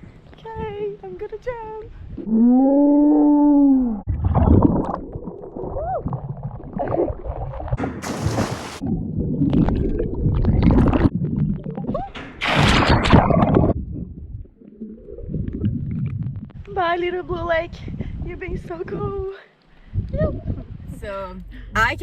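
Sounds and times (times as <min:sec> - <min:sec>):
water splashing and gurgling: 0:04.0 - 0:16.6.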